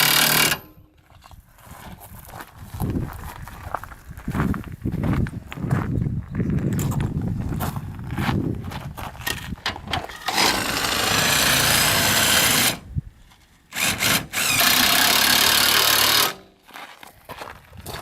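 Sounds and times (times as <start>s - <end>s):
impact wrench running: 0.0s - 0.7s, 10.2s - 12.8s, 13.7s - 16.5s.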